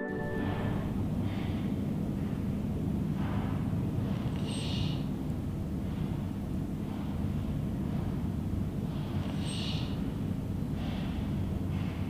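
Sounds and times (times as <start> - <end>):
short hissing breath: 4.4 - 5.1, 9.3 - 10.0.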